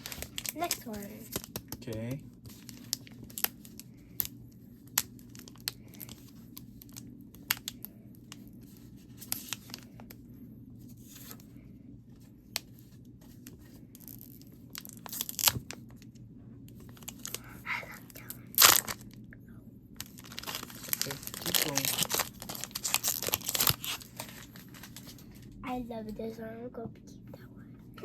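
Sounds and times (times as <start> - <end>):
foil wrapper crinkling and tearing: 0.0 - 10.1, 13.4 - 16.0, 16.8 - 19.2, 20.0 - 25.4.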